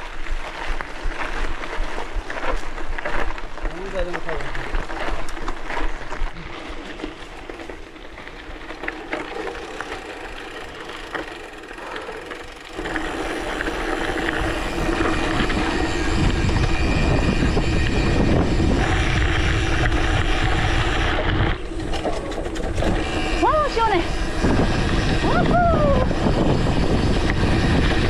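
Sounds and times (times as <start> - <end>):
bike tyre noise: 0.0 - 28.0
wind buffeting microphone: 12.3 - 28.0.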